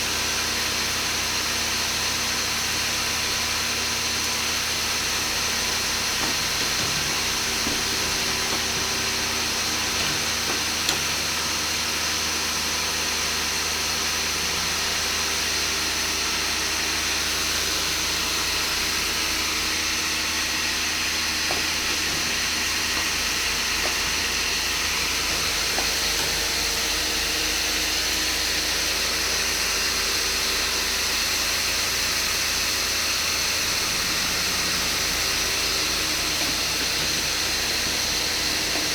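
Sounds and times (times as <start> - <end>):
welding machine mechanical hiss: 2.4 - 12.4
constant hum: 2.8 - 12.0.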